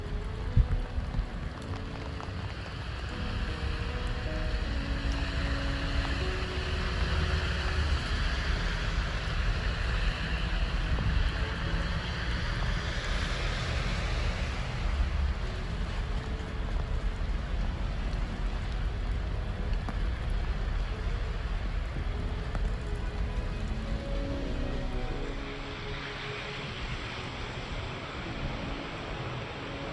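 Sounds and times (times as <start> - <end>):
wind buffeting microphone: 0.0 - 2.9, 10.3 - 13.0
water and waves rushing: 23.5 - 29.9.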